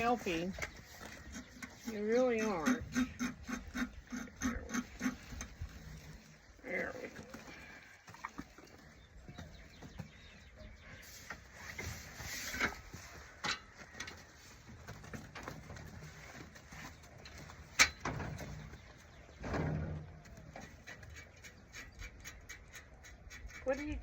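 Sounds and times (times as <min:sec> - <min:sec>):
knocks clicks and rustles: 0:11.3 - 0:23.6.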